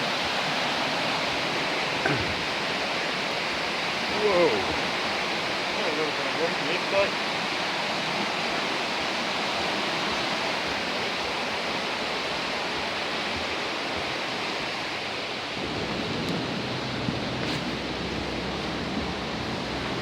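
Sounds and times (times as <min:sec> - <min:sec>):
floodwater rushing: 0:00.0 - 0:20.0
wind rumble on microphone: 0:06.8 - 0:20.0.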